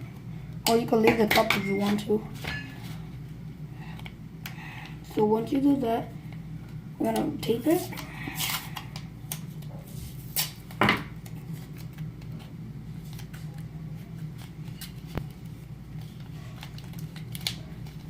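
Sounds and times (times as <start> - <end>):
steady low hum: 0.0 - 18.0
paper and tape rustling: 7.6 - 18.0
sharp paper crackle: 13.0 - 18.0.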